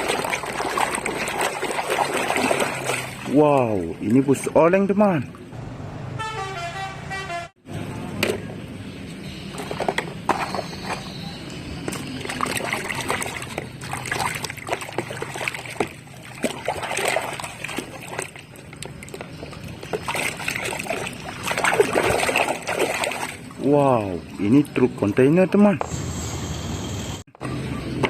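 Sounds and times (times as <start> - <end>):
water sloshing and splashing: 0.0 - 5.5, 9.2 - 25.7.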